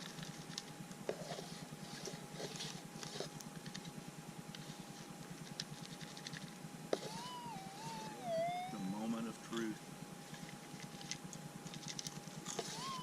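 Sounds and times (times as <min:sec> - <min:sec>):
faint steady tone: 0:06.6 - 0:13.0.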